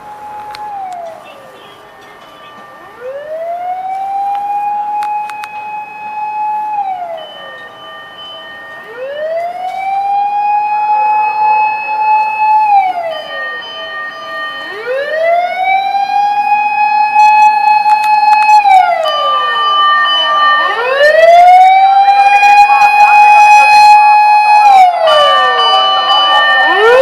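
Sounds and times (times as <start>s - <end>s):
fire engine siren wailing: 0.0s - 27.0s
steady high siren tone: 0.0s - 27.0s.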